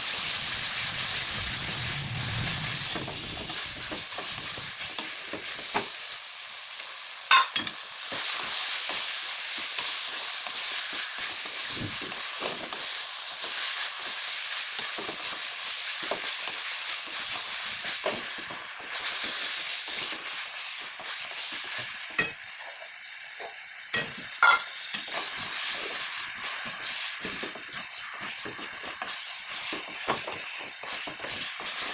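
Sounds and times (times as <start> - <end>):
curry sizzling in a pan: 0.0 - 31.9
spoon scraping and knocking pan: 7.3 - 9.0, 24.0 - 31.9.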